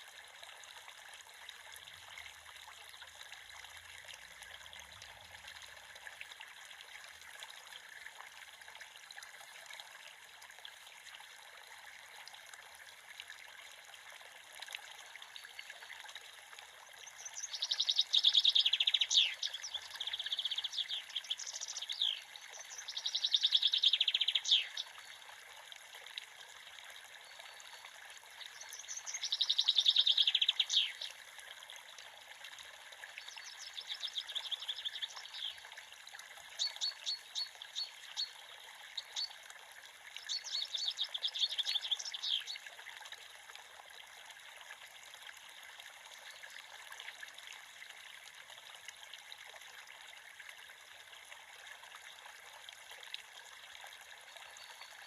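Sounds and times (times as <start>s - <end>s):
creek water trickling: 0.0s - 55.0s
bird singing trilled phrases: 17.0s - 25.2s, 27.2s - 31.1s, 33.2s - 35.7s, 36.6s - 38.4s, 39.0s - 39.4s, 40.2s - 42.6s, 54.4s - 55.0s.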